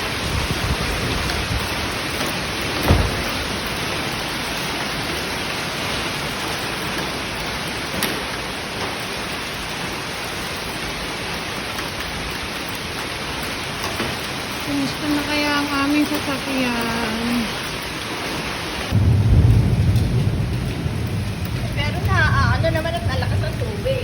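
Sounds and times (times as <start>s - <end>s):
hail and heavy rain: 0.0s - 24.0s
sharp hail strike: 2.2s - 5.0s
loud thump: 2.8s - 3.7s.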